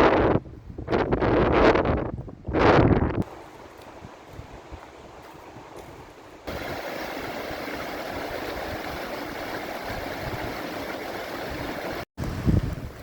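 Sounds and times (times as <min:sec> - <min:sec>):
rushing water: 0:03.3 - 0:13.0.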